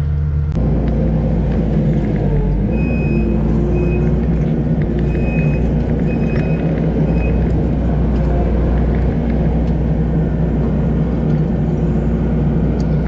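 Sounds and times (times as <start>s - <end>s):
diesel engine running under load: 0.0s - 13.0s
backup alarm beeps: 2.8s - 4.2s, 5.0s - 7.5s.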